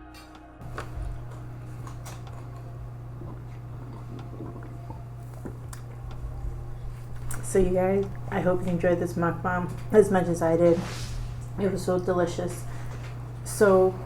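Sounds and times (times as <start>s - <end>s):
steady low hum: 0.6s - 14.0s
wet chewing and mouth clicks: 1.3s - 8.3s.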